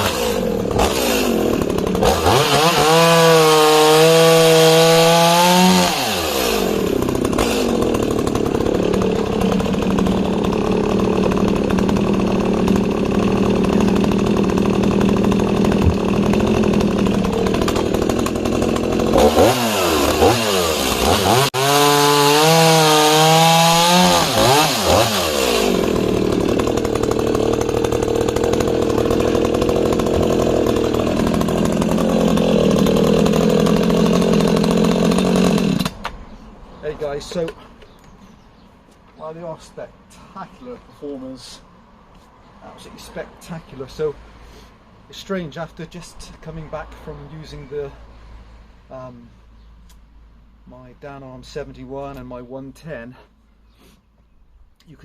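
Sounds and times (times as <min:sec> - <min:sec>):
chainsaw cutting log: 0:00.0 - 0:36.2.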